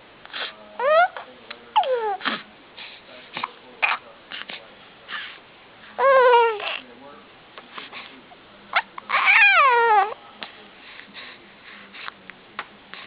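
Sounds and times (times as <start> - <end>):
baby cooing and babbling: 0.8 - 2.4, 6.0 - 6.8, 8.7 - 10.2.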